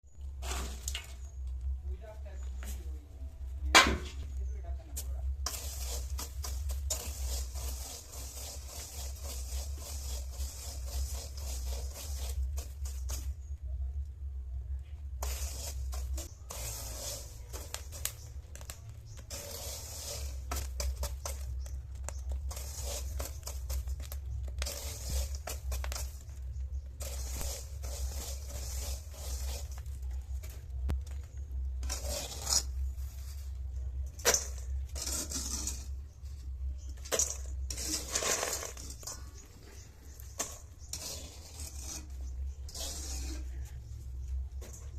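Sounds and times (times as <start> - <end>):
spatula scraping a pan: 0.2 - 1.4, 5.4 - 13.5, 15.1 - 44.9
chickpeas sizzling in a pan: 15.2 - 31.0.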